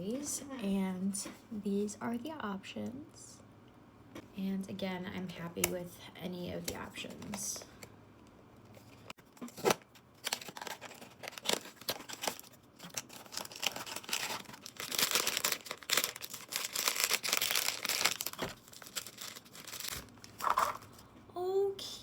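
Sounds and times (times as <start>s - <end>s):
packaging torn and crinkled: 9.4s - 20.9s.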